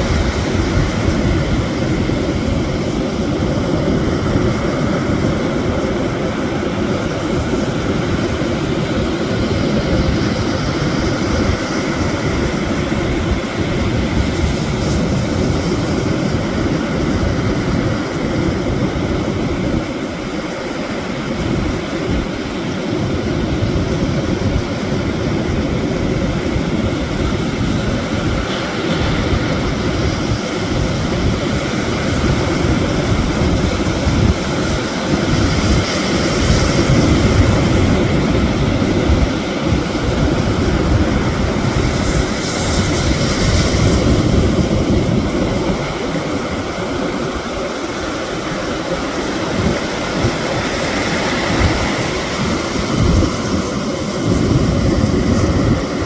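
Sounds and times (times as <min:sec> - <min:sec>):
surf washing over stones: 0:00.0 - 0:56.0
wind rumbling on microphone: 0:00.0 - 0:56.0.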